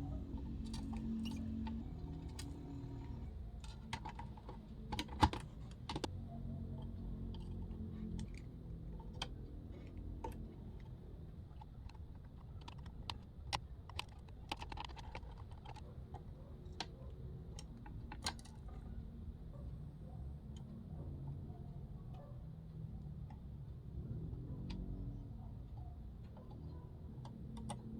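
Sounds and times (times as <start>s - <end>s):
low steady hum: 0.0s - 27.9s
clicks of small hard parts: 0.4s - 6.1s, 6.7s - 18.9s, 25.7s - 27.9s.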